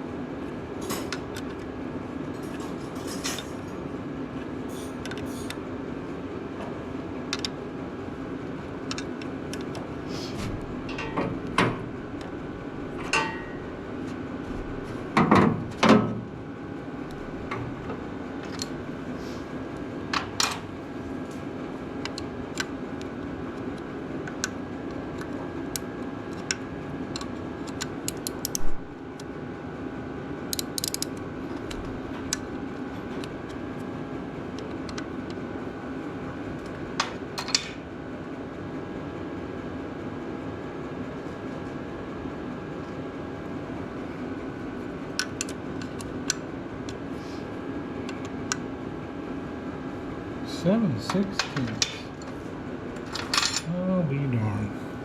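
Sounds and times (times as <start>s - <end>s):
steady low hum: 0.0s - 55.0s
wrench clinking on metal: 53.2s - 53.7s.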